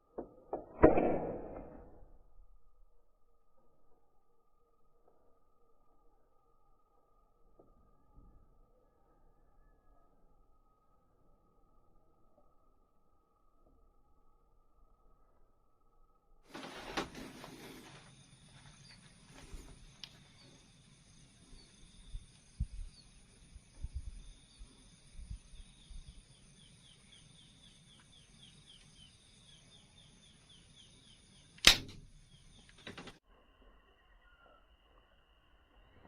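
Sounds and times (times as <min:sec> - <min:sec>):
air rifle shot: 0:00.7 - 0:02.0, 0:31.6 - 0:32.2.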